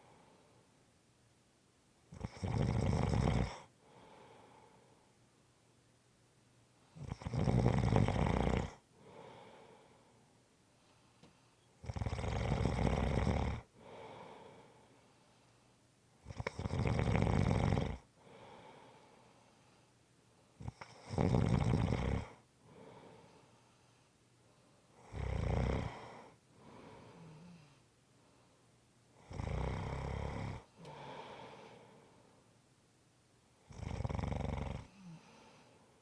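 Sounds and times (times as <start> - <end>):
soft breath: 0.0 - 0.8, 3.6 - 5.2, 8.9 - 11.8, 13.7 - 15.8, 18.2 - 20.6, 22.6 - 25.0, 25.8 - 28.8, 30.6 - 32.6, 34.8 - 36.0
person snoring: 2.1 - 3.7, 7.0 - 9.5, 11.8 - 14.6, 16.3 - 18.4, 20.6 - 23.2, 25.0 - 27.7, 33.7 - 35.6.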